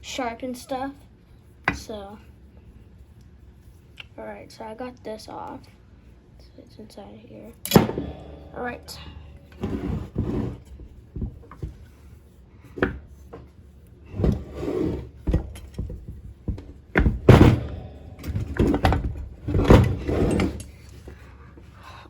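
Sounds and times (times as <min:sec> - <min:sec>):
engine parts knocking and scraping: 0:07.7 - 0:21.8.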